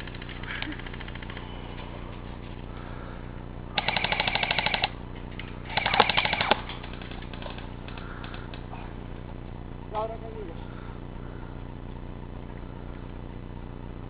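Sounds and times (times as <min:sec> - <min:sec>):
airsoft gun firing bursts: 0:00.0 - 0:01.4, 0:03.8 - 0:05.0, 0:05.7 - 0:08.4.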